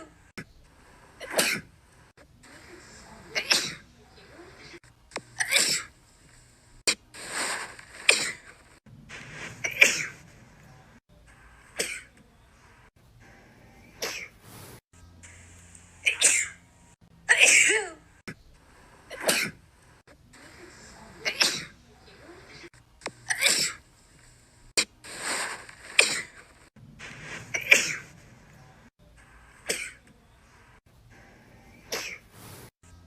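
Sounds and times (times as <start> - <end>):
woman sneezing: 3.3 - 3.8, 17.3 - 18.0.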